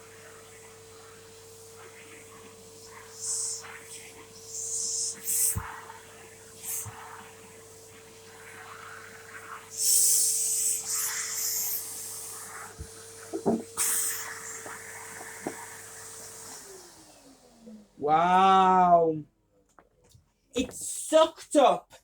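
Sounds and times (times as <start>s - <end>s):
vacuum cleaner motor whine: 0.0s - 19.1s
air rushing through hose: 2.8s - 17.3s
vacuum tool clicks and knocks: 13.3s - 13.7s.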